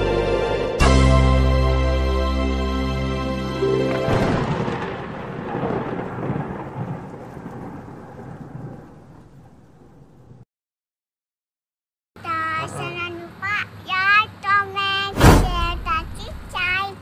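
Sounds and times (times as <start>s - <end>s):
thunder clap and rolling: 4.0s - 10.4s, 15.2s - 16.5s.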